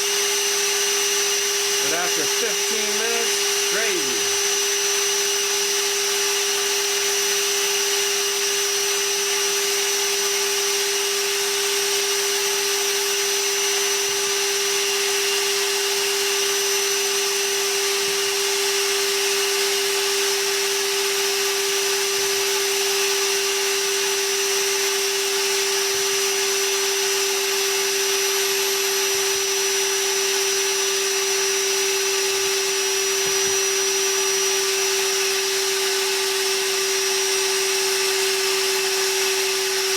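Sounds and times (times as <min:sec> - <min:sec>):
vacuum motor whining: 0:00.0 - 0:23.6, 0:25.5 - 0:39.9.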